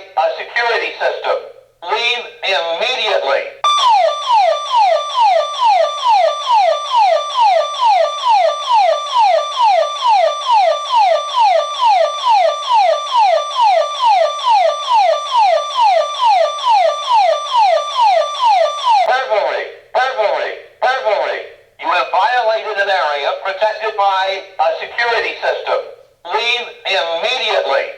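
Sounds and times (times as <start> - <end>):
burglar alarm siren: 3.6 - 19.1.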